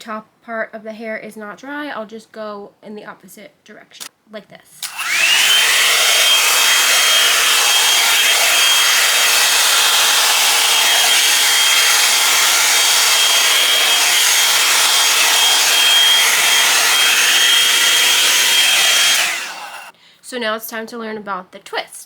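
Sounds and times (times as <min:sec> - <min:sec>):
blow-dryer brush running: 0:04.8 - 0:19.9.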